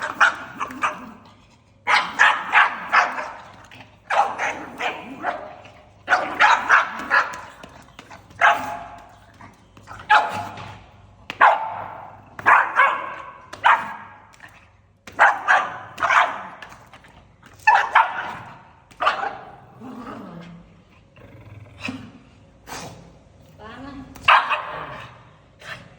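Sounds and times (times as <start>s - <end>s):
dog barking sharply: 11.4s - 14.2s.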